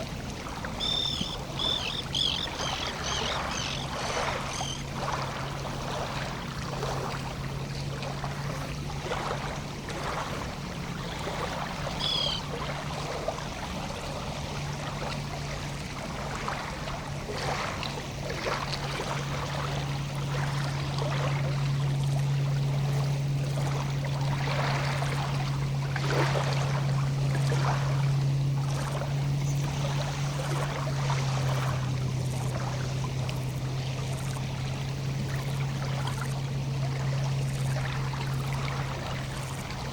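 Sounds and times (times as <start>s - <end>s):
lake water lapping: 0.0s - 39.9s
steady low hum: 0.0s - 39.9s
bird two-note call: 0.8s - 4.8s, 11.9s - 12.6s.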